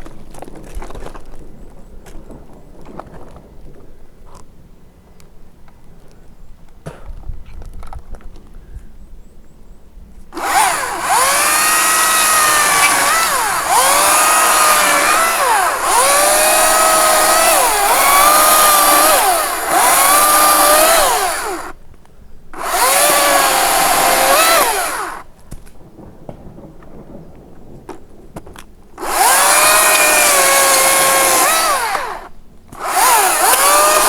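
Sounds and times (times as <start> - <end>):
electric chainsaw cutting branches: 10.4 - 21.8, 22.6 - 25.4, 29.0 - 34.0.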